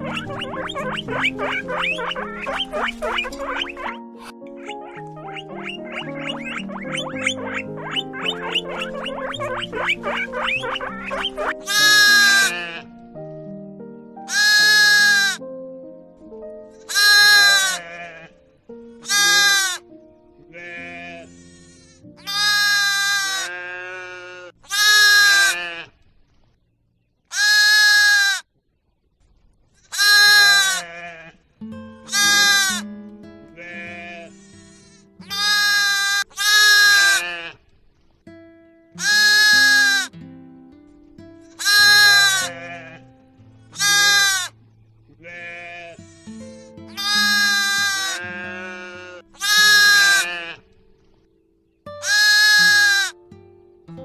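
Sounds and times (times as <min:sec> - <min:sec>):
goat or sheep bleating: 0:00.0 - 0:03.9, 0:04.5 - 0:12.8, 0:14.3 - 0:15.4, 0:16.9 - 0:18.4, 0:19.0 - 0:19.8, 0:20.5 - 0:25.9, 0:27.3 - 0:28.5, 0:29.9 - 0:31.4, 0:32.0 - 0:32.8, 0:33.5 - 0:37.6, 0:39.0 - 0:40.1, 0:41.4 - 0:43.1, 0:43.7 - 0:44.5, 0:45.1 - 0:50.7, 0:52.0 - 0:53.2
background music: 0:00.0 - 0:23.2, 0:31.8 - 0:36.2, 0:39.0 - 0:44.5, 0:46.1 - 0:50.5, 0:51.9 - 0:54.0.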